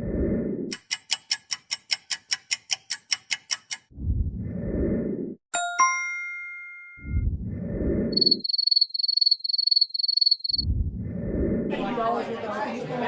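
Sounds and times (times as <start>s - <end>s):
bell-like dings: 5.6s - 7.0s.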